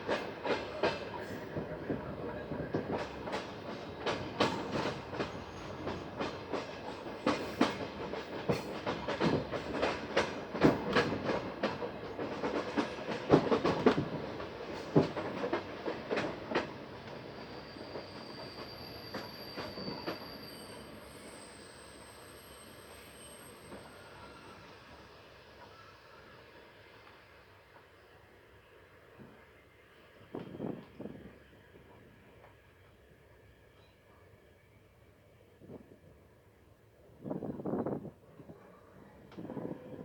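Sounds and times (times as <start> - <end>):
train wheels clacking over rail joints: 0.0 - 16.8
high thin brake squeal: 17.2 - 24.9.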